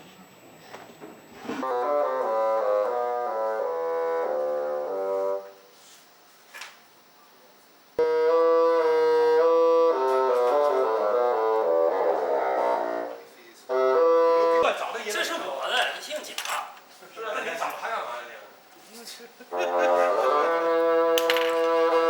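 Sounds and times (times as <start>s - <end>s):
bassoon ensemble playing chords: 1.6s - 5.6s, 8.0s - 14.7s, 19.5s - 22.0s.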